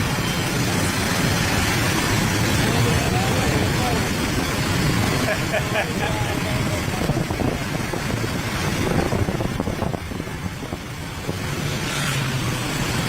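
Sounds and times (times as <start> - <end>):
road and traffic rumble: 0.0 - 13.0
vehicle engine running: 0.0 - 13.0.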